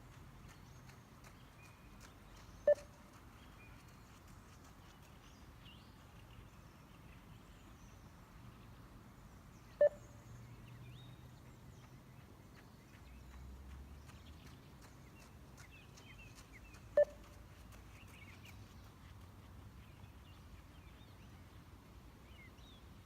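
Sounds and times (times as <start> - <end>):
short single beeps: 2.7 - 2.9, 9.8 - 10.0, 17.0 - 17.2.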